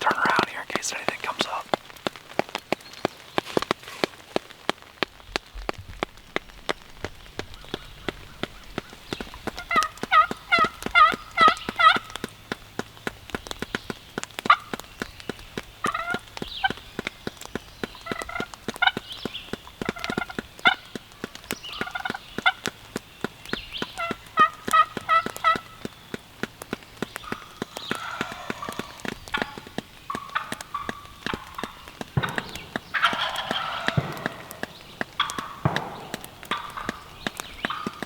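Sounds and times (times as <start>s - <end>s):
sharp drips ticking: 0.0s - 38.0s
turkey yelping: 24.0s - 25.6s, 27.2s - 38.0s.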